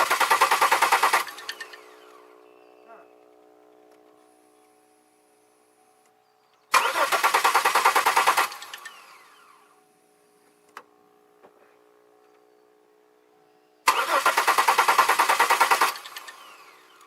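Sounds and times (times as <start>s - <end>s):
car engine cranking on starter: 0.0s - 2.0s, 6.7s - 9.6s, 13.9s - 17.0s
starter winding down whine: 0.0s - 5.0s, 6.7s - 9.8s, 13.8s - 17.0s.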